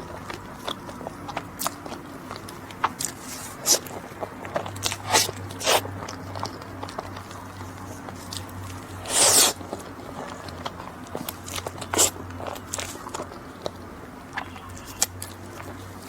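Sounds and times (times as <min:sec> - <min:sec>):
crisp bites: 0:00.2 - 0:07.4
wet mouth clicks: 0:02.4 - 0:06.6, 0:09.1 - 0:09.6.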